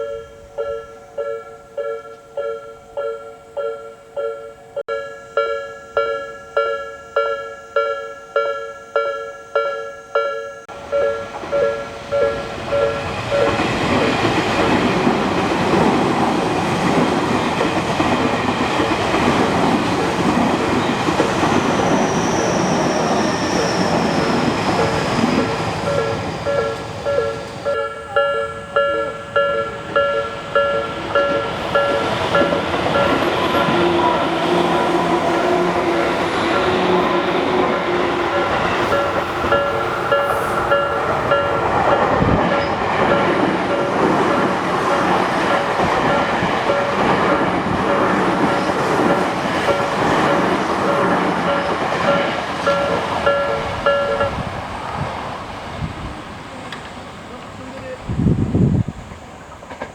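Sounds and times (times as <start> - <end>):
level crossing warning bell: 0.0 - 14.8, 22.8 - 54.4
train passing: 0.0 - 59.9.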